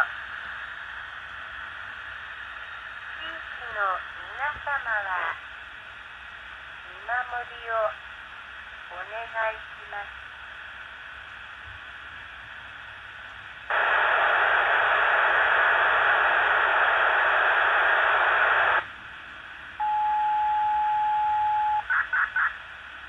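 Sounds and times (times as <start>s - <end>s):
radio static hiss: 0.0s - 19.9s, 21.5s - 23.0s
steady beep: 19.8s - 21.8s.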